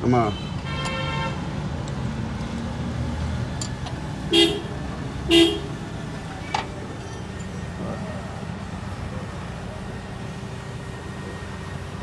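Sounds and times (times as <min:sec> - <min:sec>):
vehicle horn toots: 0:00.3 - 0:01.4, 0:04.3 - 0:04.7, 0:05.3 - 0:05.7.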